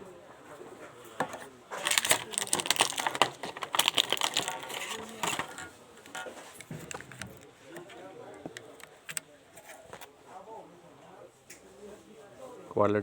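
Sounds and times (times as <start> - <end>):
packaging clicks and crackles: 1.8 - 7.5.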